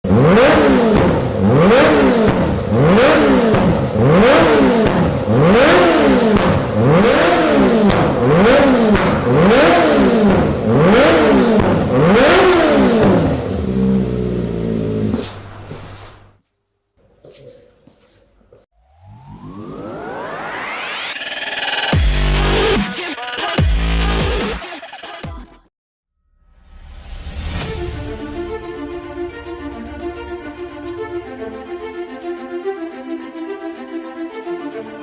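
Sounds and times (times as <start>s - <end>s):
motorcycle engine revving: 0.0s - 15.8s, 18.8s - 25.0s.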